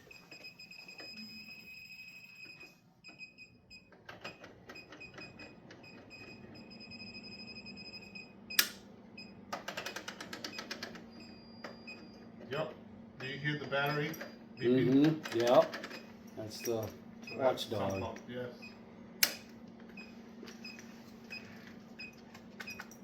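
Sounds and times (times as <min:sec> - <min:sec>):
alarm beeping high-pitched tone: 0:06.2 - 0:08.3.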